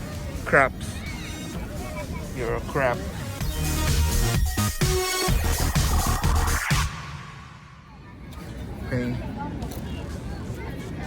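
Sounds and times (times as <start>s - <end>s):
electronic dance music: 2.6s - 7.9s.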